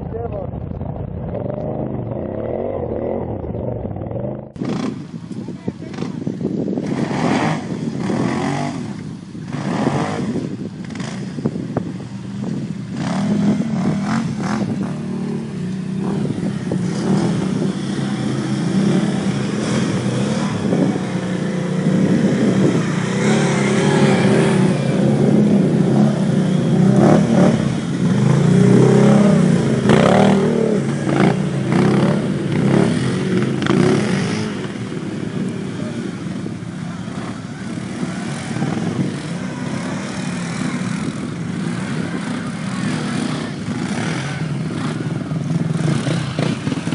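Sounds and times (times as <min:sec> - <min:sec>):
rushing noise bursts: 0:00.0 - 0:05.2
quad engine revving: 0:06.8 - 0:11.6, 0:12.9 - 0:36.2, 0:36.8 - 0:46.9.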